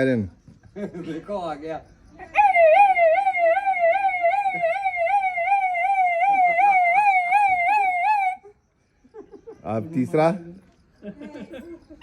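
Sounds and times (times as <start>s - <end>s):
person imitating police siren: 2.4s - 8.4s.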